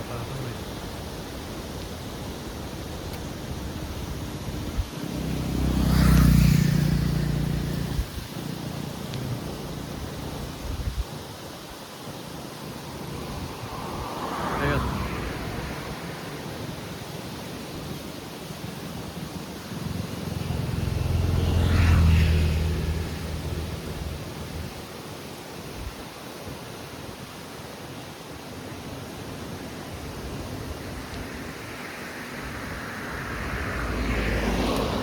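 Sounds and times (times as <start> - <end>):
wind blowing over microphone: 0.0 - 19.8, 28.7 - 35.0.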